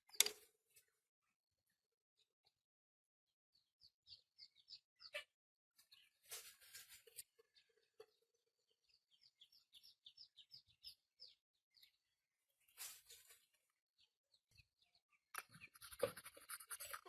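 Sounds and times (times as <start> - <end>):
sharp clicks and knocks: 0.1 - 0.4.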